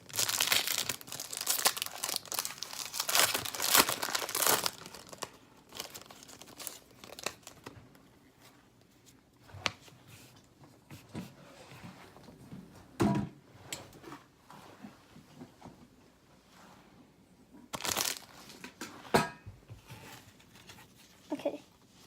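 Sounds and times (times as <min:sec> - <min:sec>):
card pack wrappers crinkling: 0:00.0 - 0:07.8, 0:17.7 - 0:18.6.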